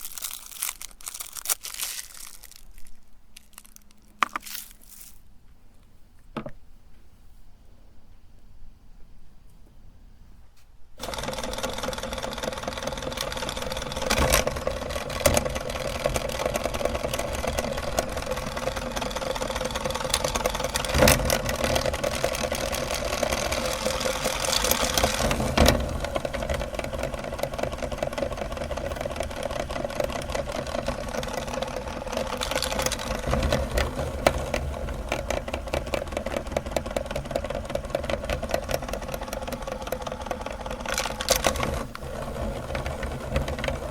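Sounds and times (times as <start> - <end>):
sharp cracks of candy grinding: 0.0 - 5.2, 13.0 - 25.6, 30.0 - 34.4, 38.3 - 41.7
electric meat grinder whirring: 11.0 - 43.9.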